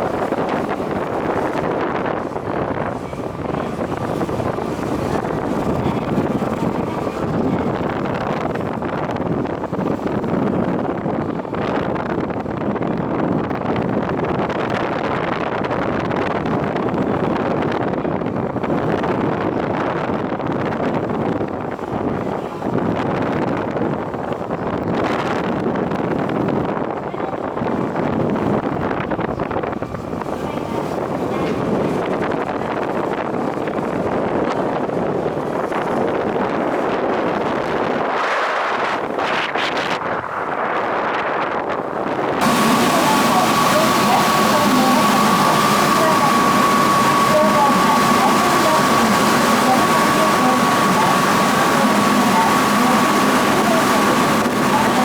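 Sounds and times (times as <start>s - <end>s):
water noise: 0.0s - 12.7s, 27.2s - 55.0s
boat engine running: 0.0s - 13.0s, 42.3s - 55.0s
wind on microphone: 0.0s - 55.0s.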